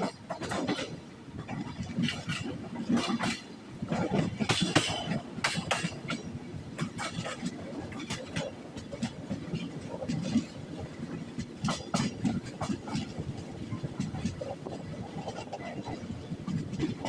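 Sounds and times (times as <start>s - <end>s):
train running rumble: 0.0s - 17.0s
train wheels clattering over joints: 0.0s - 17.0s.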